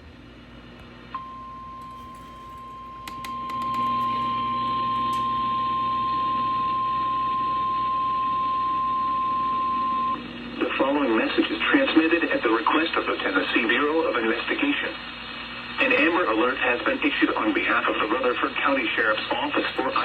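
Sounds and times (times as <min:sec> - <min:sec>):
low hum: 0:00.8 - 0:10.8
clicks: 0:01.8 - 0:05.4.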